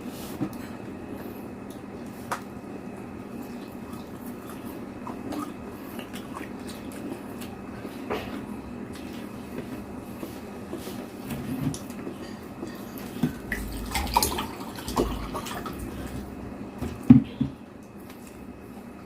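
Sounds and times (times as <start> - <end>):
chewing food: 3.3 - 16.4.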